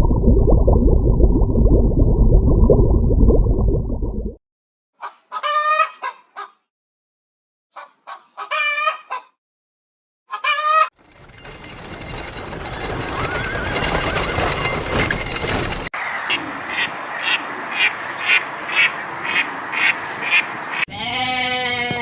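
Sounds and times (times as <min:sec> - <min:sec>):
goat bleating: 0:20.9 - 0:22.0.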